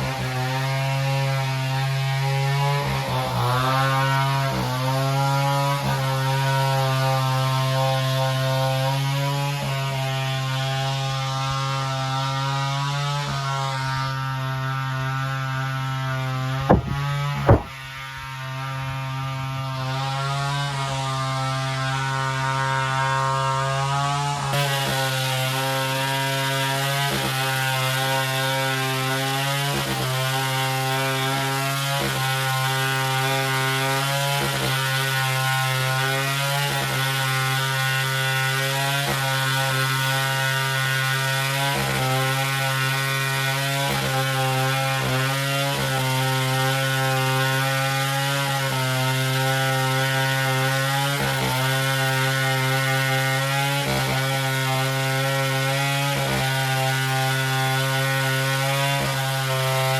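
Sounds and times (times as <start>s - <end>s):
chainsaw running: 0.0s - 7.6s, 29.4s - 59.9s.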